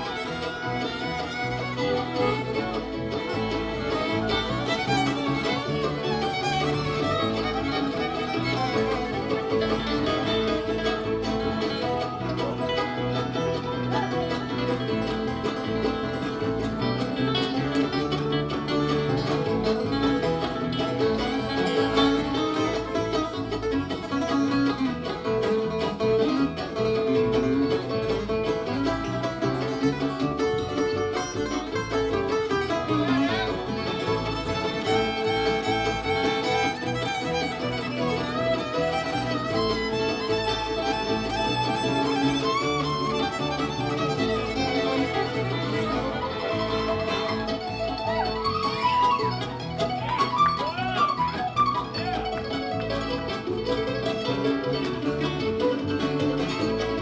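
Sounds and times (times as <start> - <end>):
bluegrass band playing: 0.0 - 57.0
fiddle: 0.0 - 57.0.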